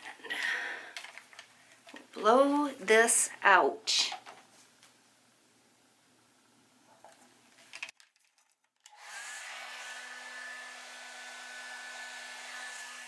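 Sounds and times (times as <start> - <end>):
hair dryer running: 9.0 - 13.0.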